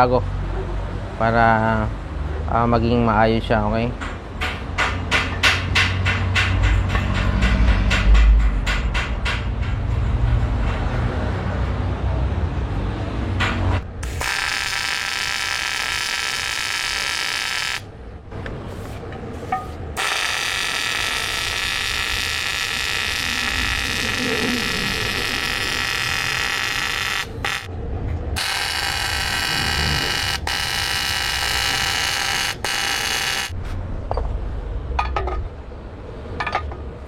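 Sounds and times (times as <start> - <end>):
welding arc buzzing: 14.0 - 17.9, 19.9 - 27.7, 28.4 - 33.6.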